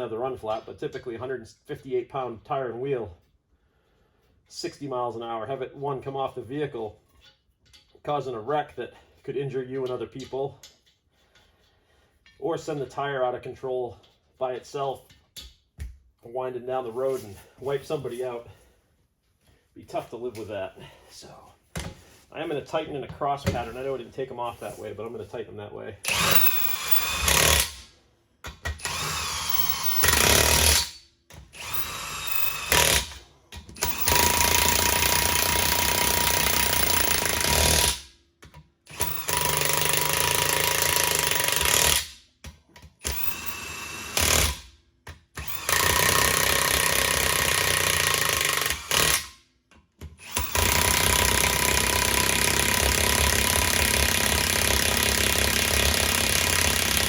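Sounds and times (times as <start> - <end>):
impact wrench running: 26.1 - 27.9, 28.7 - 33.2, 33.8 - 38.1, 38.9 - 42.2, 43.0 - 44.7, 45.4 - 49.3, 50.2 - 57.0.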